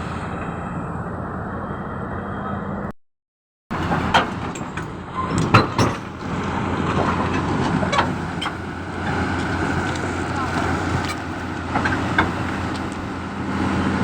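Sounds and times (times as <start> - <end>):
diesel engine running: 0.0 - 2.9, 3.7 - 14.0
metal clanks and knocks: 3.8 - 13.0.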